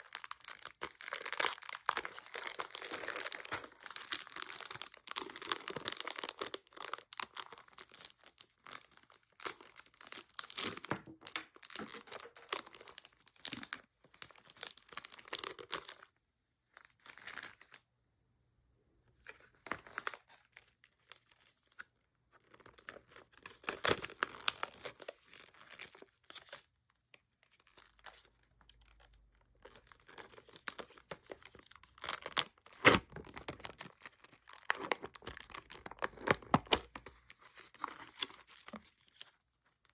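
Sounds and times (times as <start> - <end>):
wrappers torn and crinkled: 0.0 - 16.1, 22.6 - 26.5, 27.7 - 39.3.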